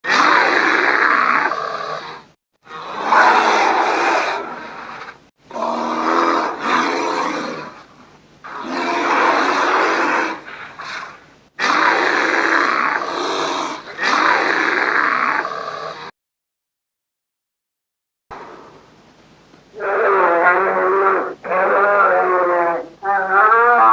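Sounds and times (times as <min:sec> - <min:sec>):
creature roaring and growling: 0:00.0 - 0:04.8, 0:05.5 - 0:07.8, 0:08.5 - 0:11.0, 0:11.6 - 0:16.1, 0:19.7 - 0:23.9.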